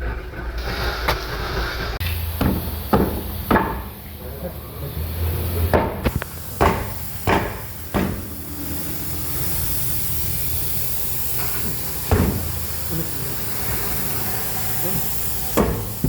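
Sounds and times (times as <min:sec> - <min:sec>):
steady hiss: 0:00.6 - 0:16.0
sharp knocks in a garage: 0:02.0 - 0:04.0, 0:05.7 - 0:08.4, 0:11.5 - 0:12.6, 0:15.6 - 0:16.0.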